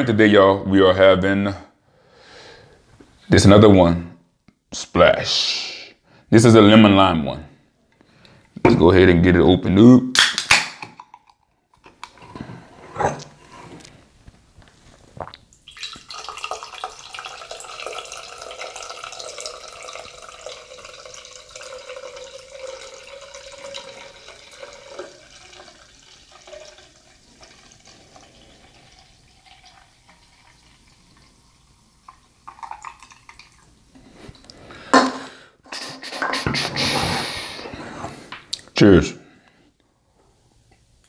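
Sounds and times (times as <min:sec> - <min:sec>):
fizzy drink pouring into glass: 0:15.2 - 0:33.9.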